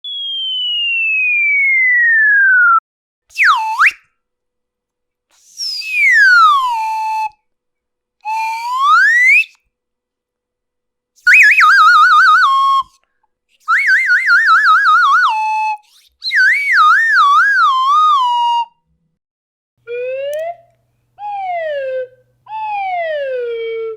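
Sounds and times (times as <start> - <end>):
cartoon whistle sound effects: 0.0 - 4.1, 5.4 - 7.3, 8.2 - 9.6, 11.2 - 13.0, 13.7 - 18.8, 21.2 - 23.4.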